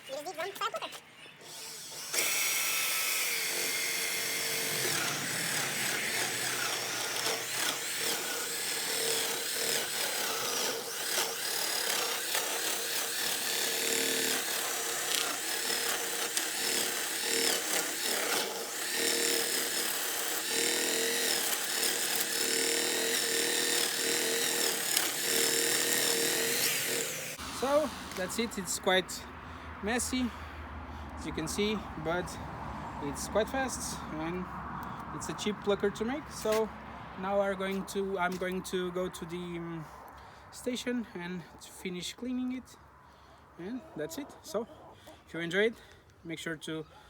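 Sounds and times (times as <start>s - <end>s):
drill-driven chicken plucker: 1.4s - 28.6s.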